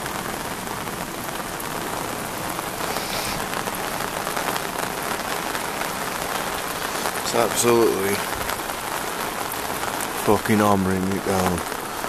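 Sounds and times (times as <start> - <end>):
heavy rain: 0.0 - 12.0.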